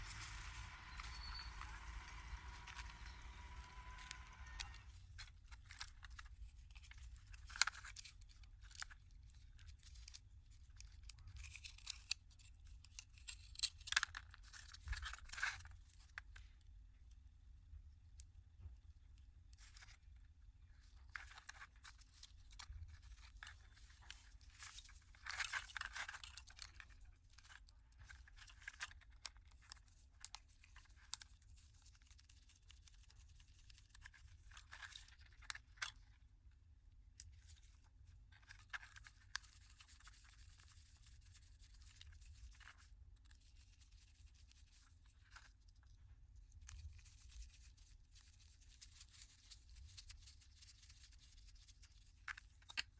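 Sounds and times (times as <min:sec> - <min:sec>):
scraping and tearing strokes: 0:00.0 - 0:05.8.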